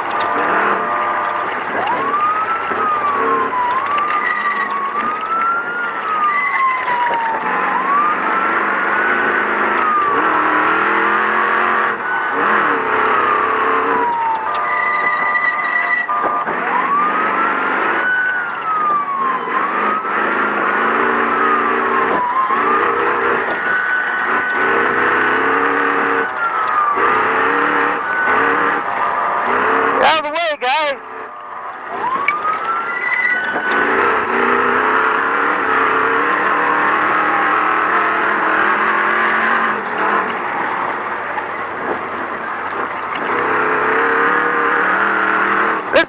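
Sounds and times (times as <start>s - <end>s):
cab and road noise: 0.0s - 46.0s
truck engine revving: 0.0s - 46.0s.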